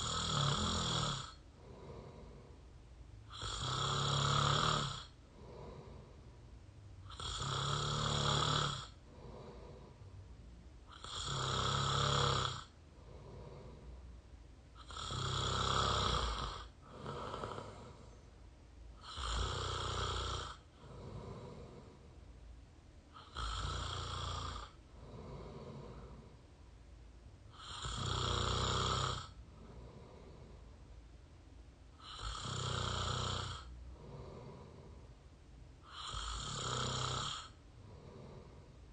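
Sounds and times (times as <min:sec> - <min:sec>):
person snoring: 0:00.0 - 0:02.6, 0:03.3 - 0:06.2, 0:07.0 - 0:10.0, 0:10.9 - 0:14.0, 0:14.8 - 0:18.2, 0:19.0 - 0:22.1, 0:23.1 - 0:26.4, 0:27.5 - 0:30.6, 0:32.0 - 0:35.1, 0:35.8 - 0:38.8
soft breath: 0:01.3 - 0:03.3, 0:05.0 - 0:07.0, 0:08.9 - 0:10.9, 0:12.6 - 0:15.4, 0:16.2 - 0:19.6, 0:20.5 - 0:22.4, 0:23.0 - 0:26.7, 0:29.2 - 0:31.0, 0:33.5 - 0:36.3, 0:37.4 - 0:38.9.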